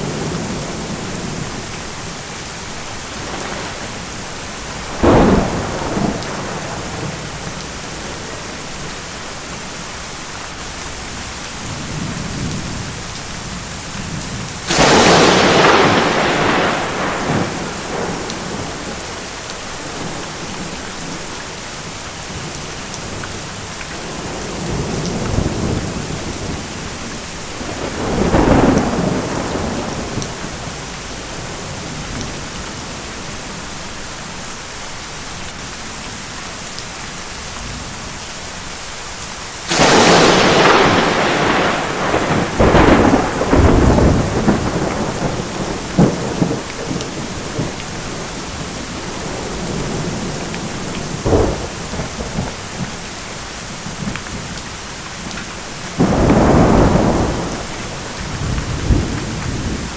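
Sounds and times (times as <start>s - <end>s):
steady rain: 0.0s - 59.9s
thunder cracks rumbling: 3.0s - 8.2s, 11.7s - 21.2s, 24.0s - 32.6s, 39.7s - 53.0s, 56.0s - 59.9s.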